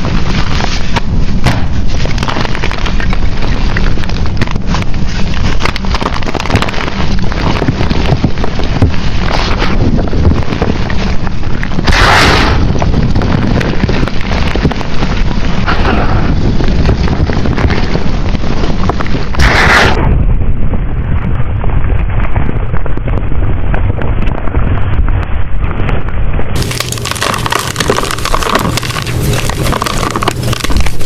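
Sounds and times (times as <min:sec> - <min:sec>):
chalk crushed by hand: 0:26.6 - 0:31.0.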